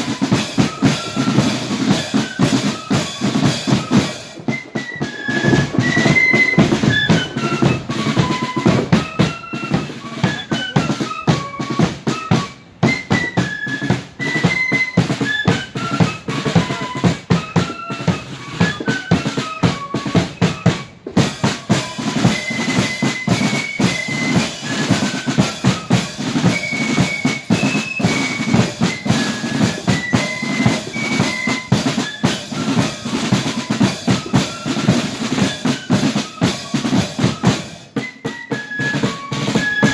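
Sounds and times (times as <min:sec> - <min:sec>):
flutes playing melody: 0:00.0 - 0:39.9
snare and bass drum beats: 0:00.0 - 0:39.9.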